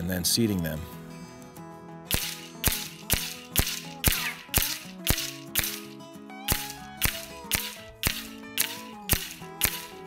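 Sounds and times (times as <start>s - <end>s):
sustained music tones: 1.0s - 10.0s
sharp percussive hits: 2.1s - 10.0s.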